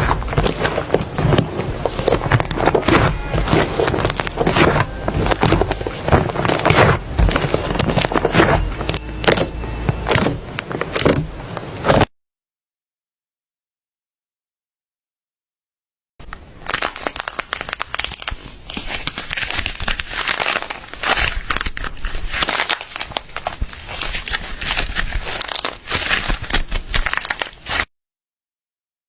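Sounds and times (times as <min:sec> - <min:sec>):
slime squeezed by hand crackling: 0:16.6 - 0:27.9.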